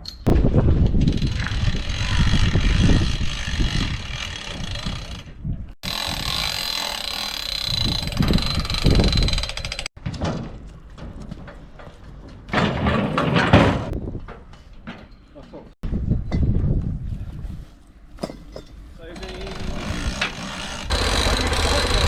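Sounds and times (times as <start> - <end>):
machinery rattling and clanking: 18.2 - 22.0.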